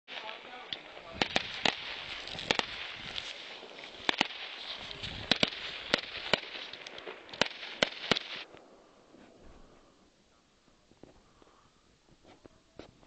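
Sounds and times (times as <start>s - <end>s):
fireworks bangs: 0.1s - 9.9s
fireworks crackling hiss: 0.1s - 10.0s.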